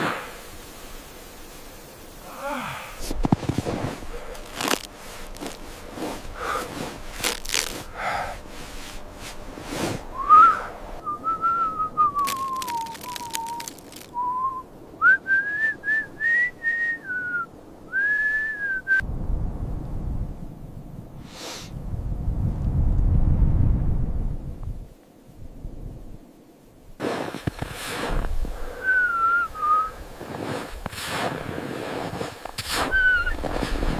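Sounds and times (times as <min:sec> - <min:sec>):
person whistling: 0:10.2 - 0:19.0, 0:28.8 - 0:29.9.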